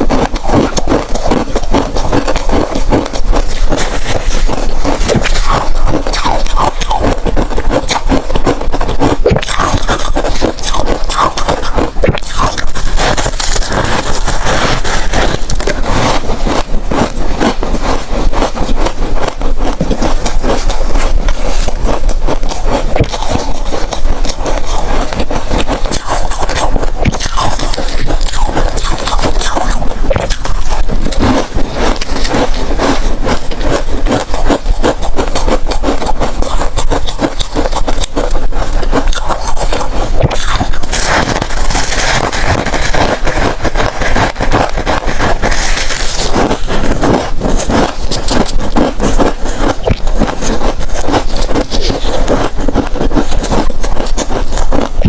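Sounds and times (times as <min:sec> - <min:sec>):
ice crunching while chewed: 0:00.0 - 0:55.0.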